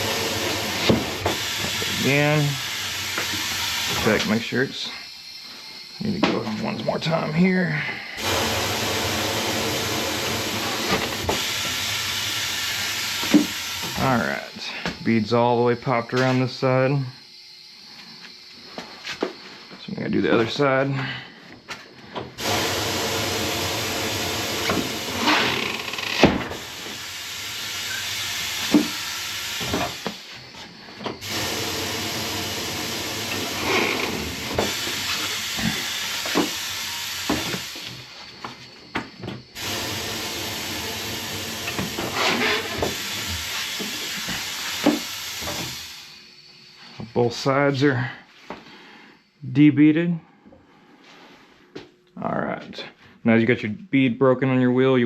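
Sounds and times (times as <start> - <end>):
compressed air hissing: 0.0 - 5.9, 8.0 - 14.9, 22.4 - 38.3, 39.5 - 46.3.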